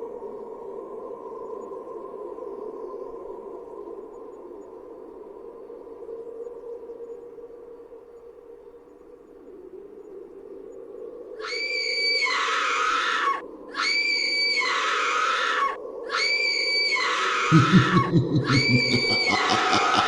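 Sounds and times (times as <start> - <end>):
shrill creature shriek: 11.4 - 17.6
low drone: 17.5 - 20.0
low pulsing growl: 17.5 - 20.0.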